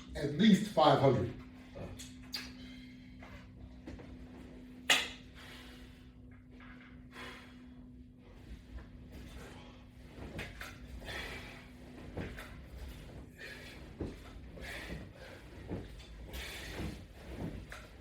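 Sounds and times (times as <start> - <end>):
exercise equipment knocks and creaks: 12.0 - 18.0.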